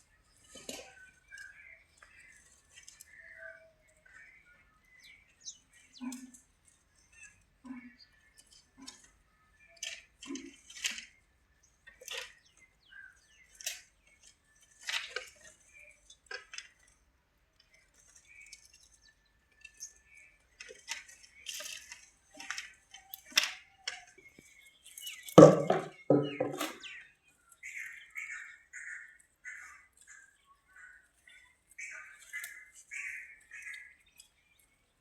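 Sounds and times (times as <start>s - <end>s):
goats chewing grass: 0.0s - 9.2s.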